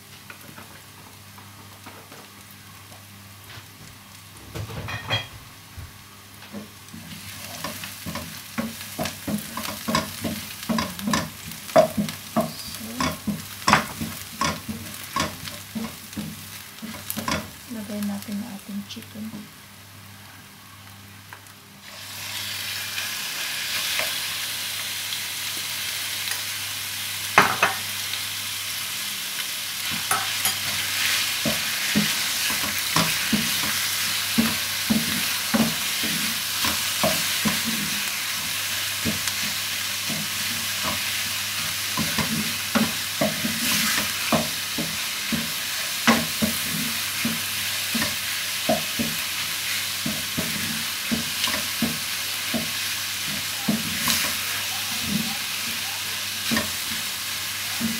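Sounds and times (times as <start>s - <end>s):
chicken sizzling in a pan: 1.8s - 57.9s
spatula knocking and scraping pan: 7.4s - 17.6s, 29.9s - 55.8s, 56.4s - 57.1s.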